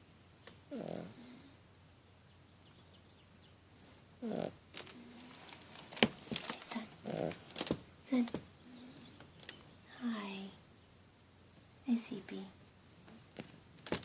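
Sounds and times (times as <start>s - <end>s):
cat snoring: 0.7s - 1.5s, 4.2s - 4.6s, 7.0s - 7.4s.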